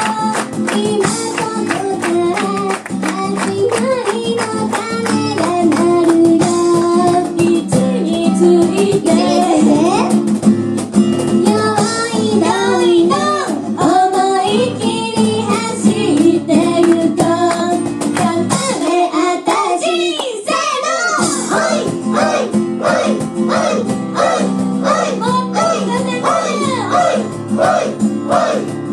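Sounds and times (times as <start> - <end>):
strummed acoustic guitar: 0.0 - 19.2, 21.2 - 28.9
people singing: 11.7 - 28.9.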